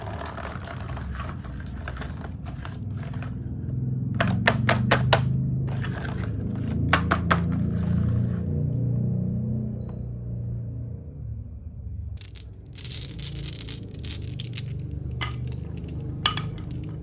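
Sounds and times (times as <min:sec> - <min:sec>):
marbles rolling on wooden track: 0:00.0 - 0:03.5, 0:04.2 - 0:08.5, 0:12.2 - 0:17.0
marbles clacking on track: 0:12.2 - 0:17.0.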